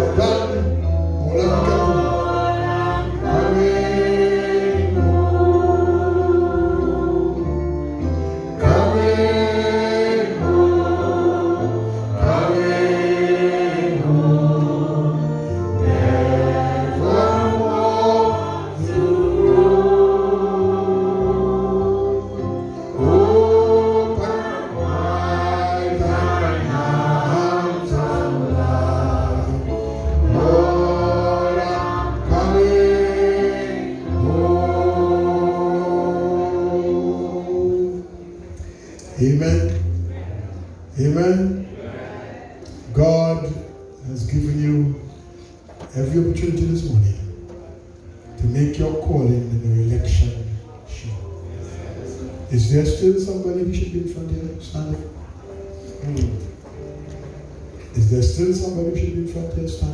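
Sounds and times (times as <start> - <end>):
choir singing gospel song: 0.0 - 44.5.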